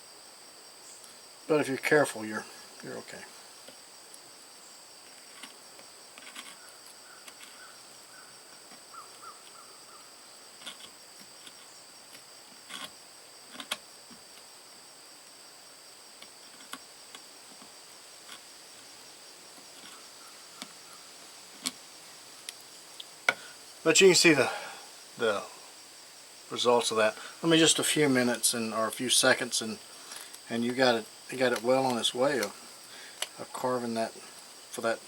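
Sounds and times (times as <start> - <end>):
high insect trill: 0.0 - 35.0
knife carving wood: 5.0 - 9.7, 10.5 - 14.5, 16.2 - 18.9, 19.5 - 20.9, 21.5 - 21.8.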